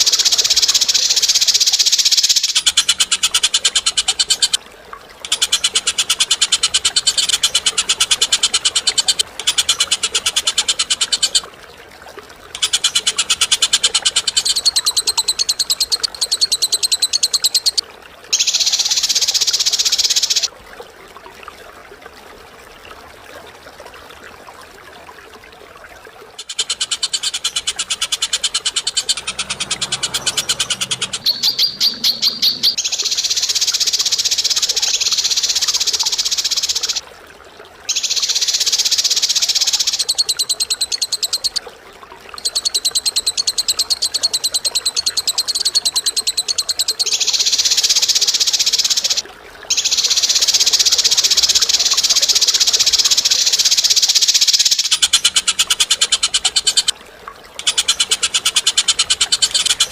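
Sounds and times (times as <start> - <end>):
bird rattling trills: 18.4 - 20.5, 26.4 - 37.0.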